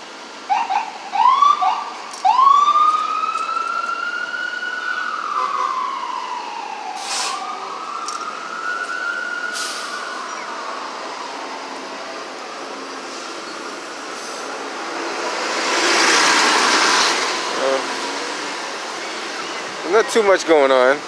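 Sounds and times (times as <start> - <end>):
emergency vehicle siren wailing: 0.4 - 21.0
short hisses: 7.0 - 7.4.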